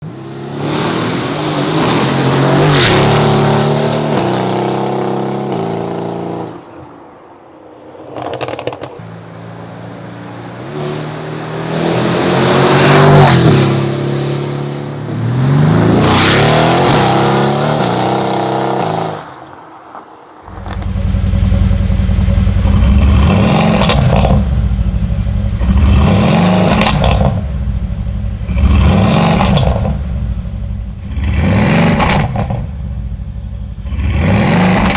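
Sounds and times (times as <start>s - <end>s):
car engine revving: 0.1s - 5.9s, 20.5s - 34.9s
exhaust crackle: 20.5s - 34.9s.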